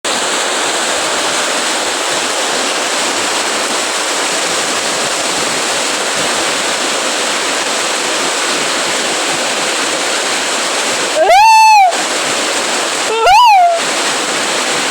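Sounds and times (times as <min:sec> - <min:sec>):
heavy rain falling: 0:00.1 - 0:14.9.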